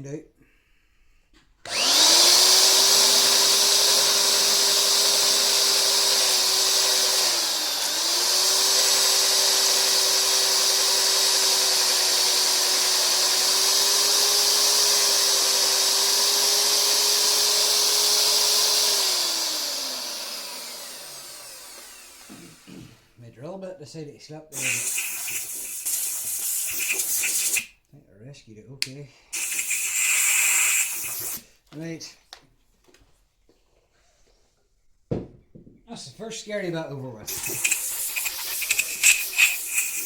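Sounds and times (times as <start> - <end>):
drill running: 1.6 - 23.0, 24.6 - 27.7, 29.4 - 31.4, 37.3 - 40.0.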